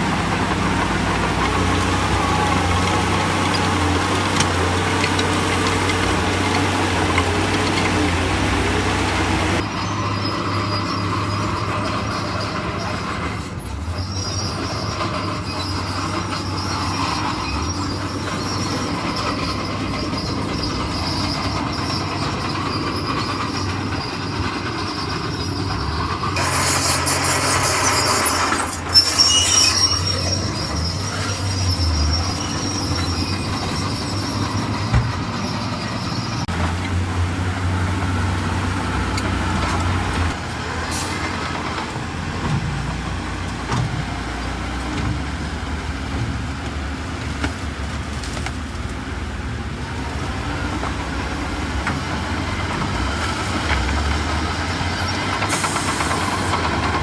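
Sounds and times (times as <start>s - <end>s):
diesel earthmoving machinery running: 0.0s - 57.0s
thin high squeal: 14.0s - 36.4s.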